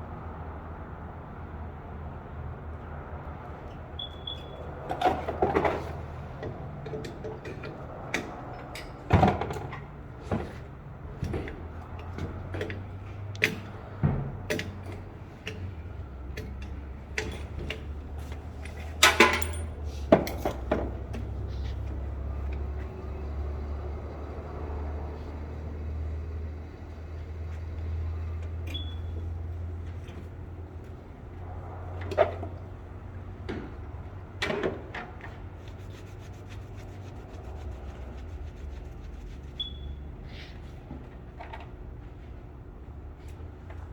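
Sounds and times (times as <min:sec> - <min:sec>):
metallic clanks of tools: 0:18.7 - 0:20.6.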